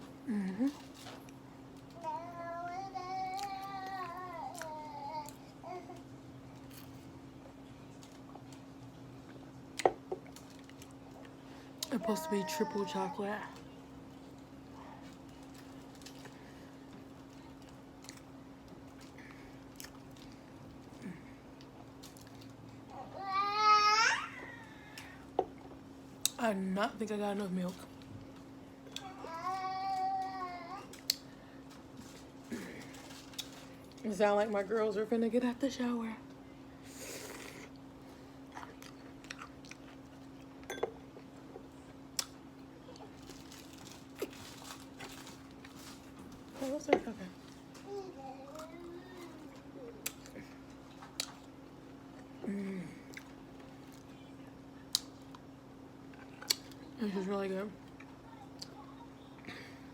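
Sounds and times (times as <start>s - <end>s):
faint steady hum: 0.0s - 59.9s
person chewing food: 17.6s - 21.0s, 37.2s - 43.2s
person chewing: 38.5s - 40.5s.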